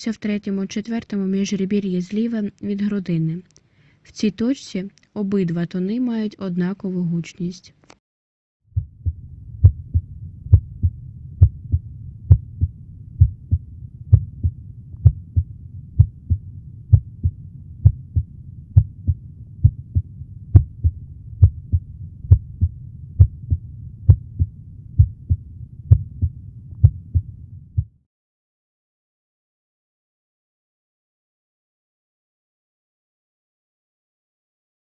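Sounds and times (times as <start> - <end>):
heartbeat through a stethoscope: 8.8 - 28.0.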